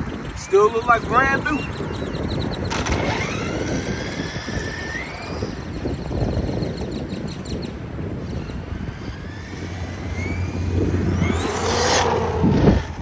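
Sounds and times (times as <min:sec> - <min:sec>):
electric motor whining: 0:02.6 - 0:06.8, 0:08.2 - 0:13.0.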